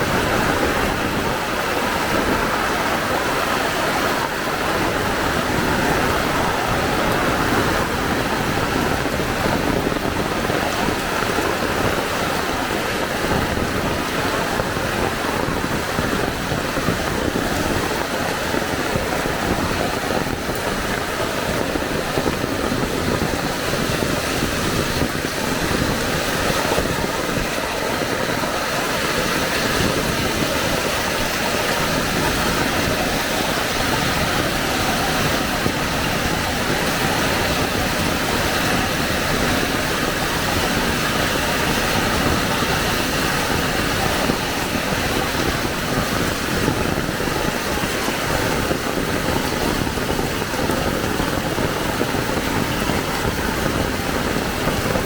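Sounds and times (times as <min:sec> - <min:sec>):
heavy rain falling: 0:00.0 - 0:55.0.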